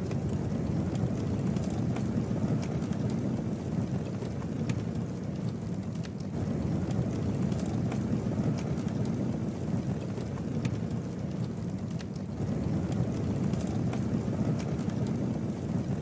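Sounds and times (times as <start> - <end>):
campfire pops and crackles: 0.0 - 16.0
fire low rumble: 0.0 - 16.0.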